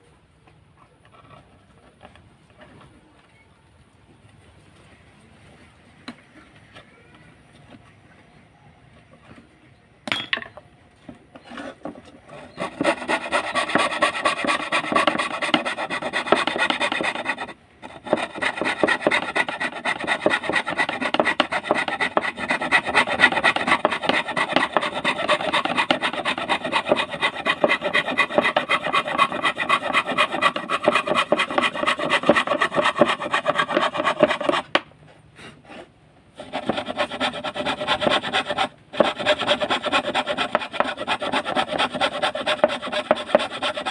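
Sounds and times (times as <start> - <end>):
fretsaw cutting wood: 12.3 - 34.8, 36.4 - 43.9.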